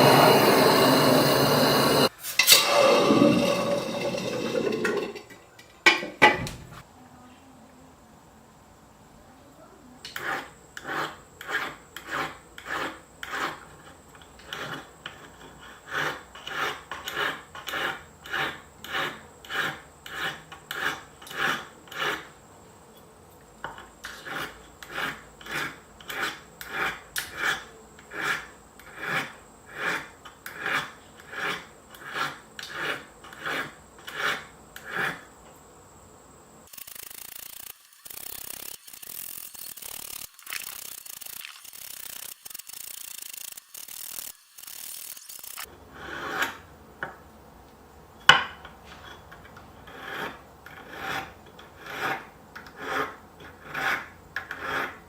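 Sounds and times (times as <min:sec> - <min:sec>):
hissy noise: 0:00.0 - 0:05.2
abrasive rasping on spoon: 0:00.0 - 0:05.4, 0:36.7 - 0:46.6.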